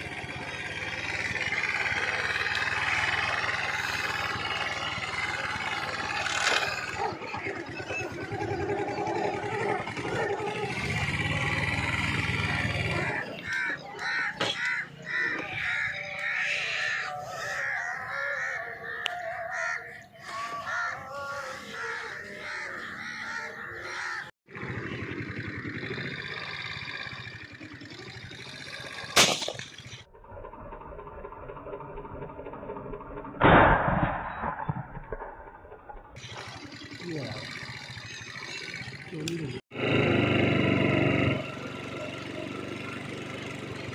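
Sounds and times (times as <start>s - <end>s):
birds calling: 0.0s - 30.1s, 36.2s - 39.6s
shotgun shot: 29.2s - 29.6s, 33.4s - 35.0s.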